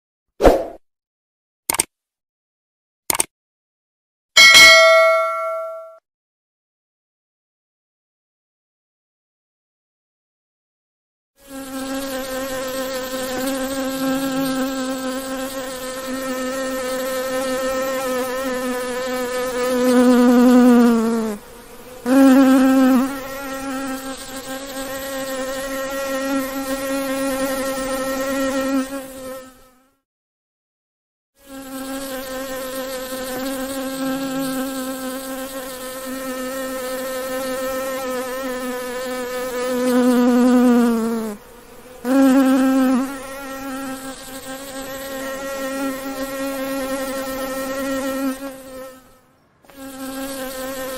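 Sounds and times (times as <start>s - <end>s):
bee buzzing: 11.4s - 29.9s, 31.4s - 50.9s.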